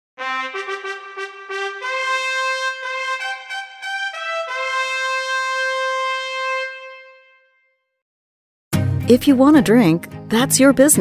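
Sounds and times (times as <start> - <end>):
brass instrument melody: 0.2 - 8.0.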